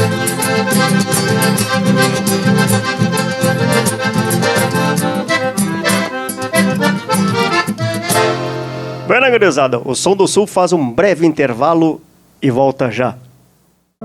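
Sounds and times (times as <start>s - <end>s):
steady beat: 0.0s - 9.1s
accordion playing folk music: 0.0s - 9.6s.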